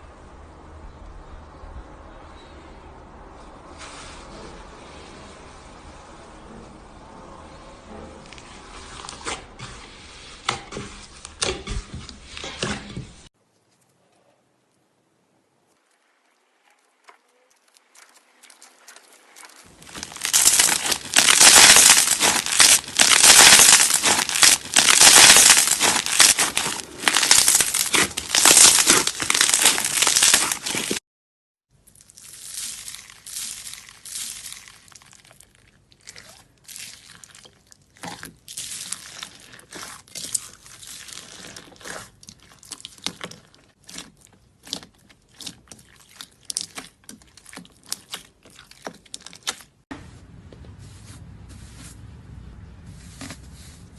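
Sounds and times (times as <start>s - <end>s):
slime crackling by hand: 17.6s - 31.0s, 32.0s - 49.8s.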